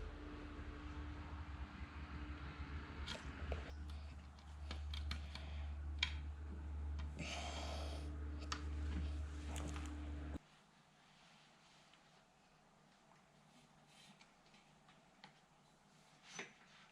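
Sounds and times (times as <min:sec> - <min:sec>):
low hum: 0:00.0 - 0:10.4
parts clicking and tapping: 0:03.0 - 0:07.2.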